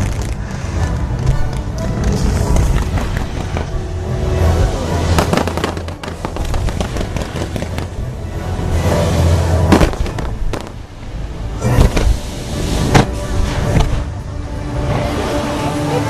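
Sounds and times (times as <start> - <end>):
music: 0.0 - 16.0
fireworks bangs: 2.1 - 3.9, 5.0 - 8.0, 9.6 - 10.9.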